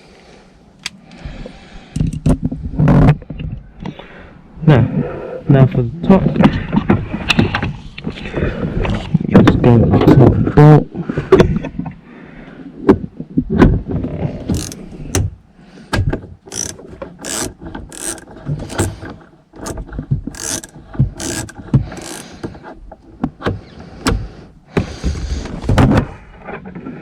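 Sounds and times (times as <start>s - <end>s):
ratchet wrench clicking: 14.5s - 15.3s, 16.5s - 19.0s, 20.4s - 22.4s.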